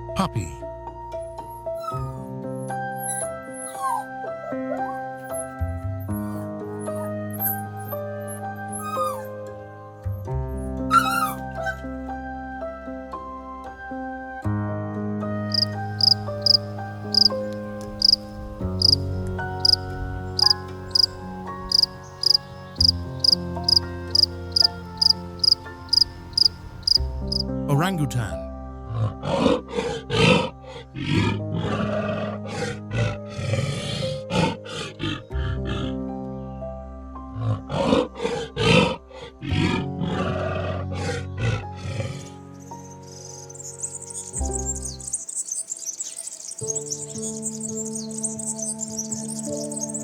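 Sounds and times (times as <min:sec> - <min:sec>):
soft background music: 0:00.0 - 0:50.0
cricket chirping: 0:15.5 - 0:27.4, 0:42.6 - 0:50.0
wild animal roaring: 0:28.9 - 0:36.0, 0:37.4 - 0:42.4.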